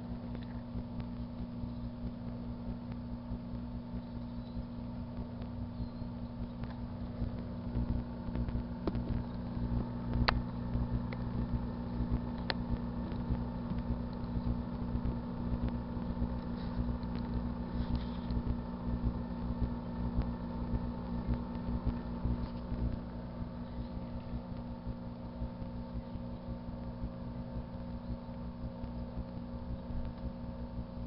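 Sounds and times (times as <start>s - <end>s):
microwave oven humming: 0.0s - 31.0s
sharp ticks: 0.3s - 17.6s, 18.3s - 23.2s.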